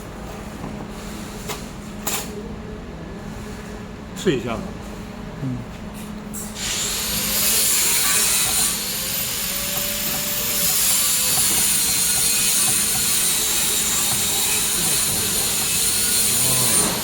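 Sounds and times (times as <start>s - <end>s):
laser welder hissing: 6.6s - 17.0s.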